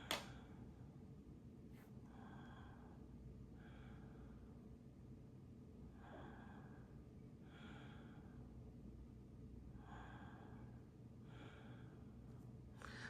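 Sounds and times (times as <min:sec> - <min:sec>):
person breathing softly: 0:01.7 - 0:04.6, 0:05.9 - 0:08.6, 0:09.7 - 0:13.0.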